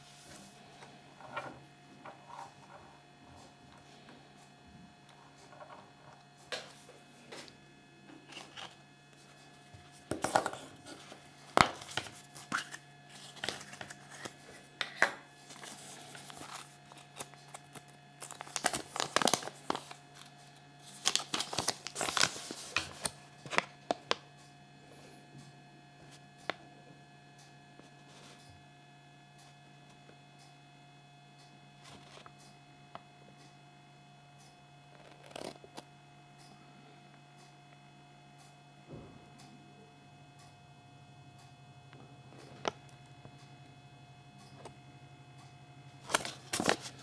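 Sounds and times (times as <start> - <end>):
packaging crinkling and tearing: 10.1 - 24.2, 46.0 - 47.0.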